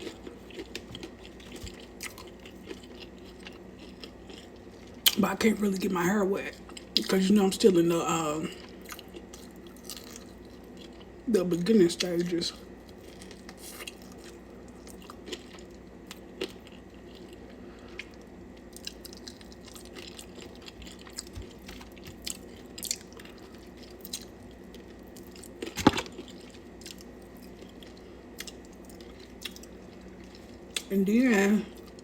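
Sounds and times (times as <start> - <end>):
chewing chicken wings: 0.0 - 32.0.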